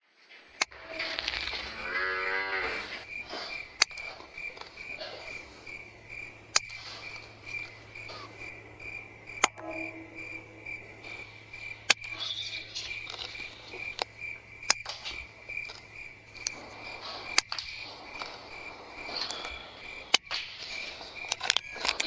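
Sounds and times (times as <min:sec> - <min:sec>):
crickets chirping: 0:00.0 - 0:22.0
low drawn-out animal call: 0:00.7 - 0:03.6
sharp clicks: 0:02.8 - 0:10.0, 0:11.0 - 0:22.0.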